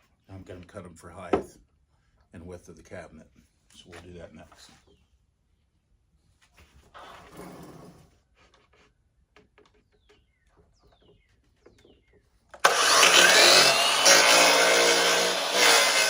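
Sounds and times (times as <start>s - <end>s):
power saw cutting wood: 12.5s - 16.0s.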